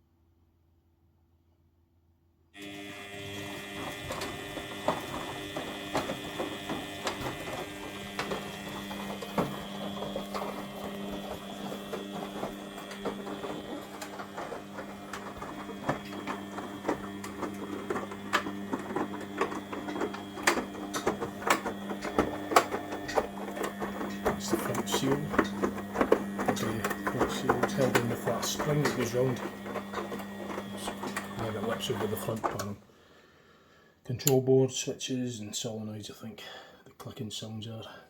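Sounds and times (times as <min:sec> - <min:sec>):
washing machine motor humming: 0:02.6 - 0:32.8.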